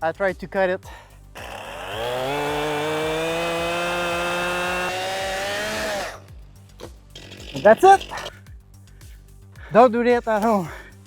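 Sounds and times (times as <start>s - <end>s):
chainsaw cutting into tree: 1.4s - 6.3s, 7.0s - 8.3s.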